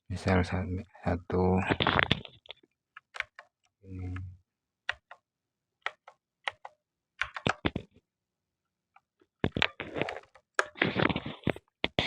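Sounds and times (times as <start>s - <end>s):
mechanical keyboard key clicks: 5.9s - 7.7s.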